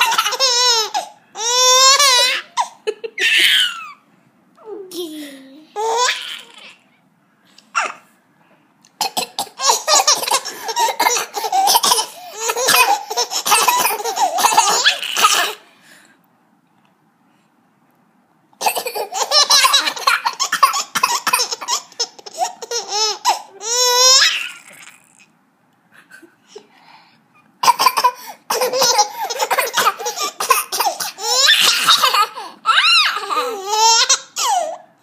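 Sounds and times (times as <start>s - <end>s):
baby laughing and squealing: 0.0s - 4.0s, 5.8s - 6.8s, 7.7s - 8.0s, 9.6s - 15.6s, 18.6s - 25.3s, 27.6s - 34.8s.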